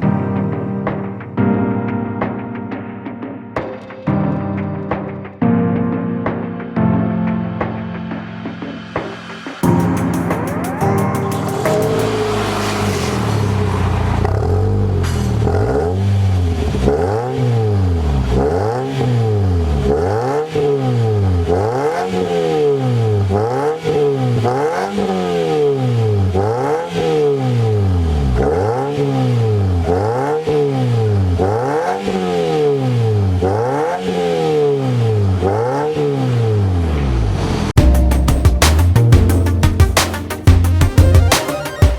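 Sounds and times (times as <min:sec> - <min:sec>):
car engine revving: 0:09.6 - 0:37.8.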